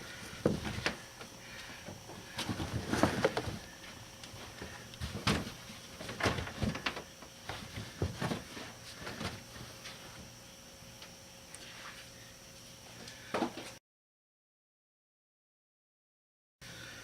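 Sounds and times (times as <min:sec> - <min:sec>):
carpet rustling and scuffing: 0:02.2 - 0:06.8, 0:07.4 - 0:10.3.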